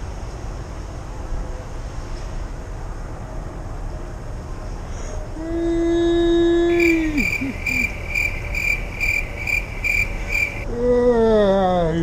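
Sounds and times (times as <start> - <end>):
crickets chirping: 6.7 - 10.7.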